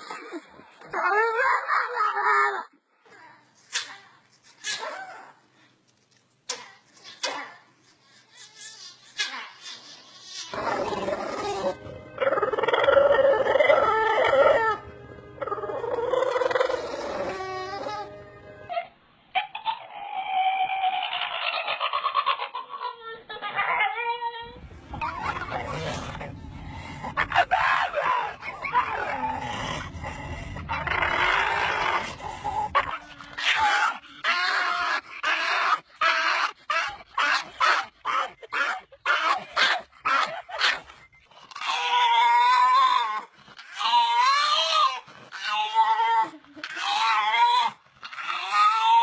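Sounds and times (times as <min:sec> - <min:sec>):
dog squealing and whining: 0:15.4 - 0:40.8, 0:41.5 - 0:49.0
dog making pitched calls: 0:24.9 - 0:40.8.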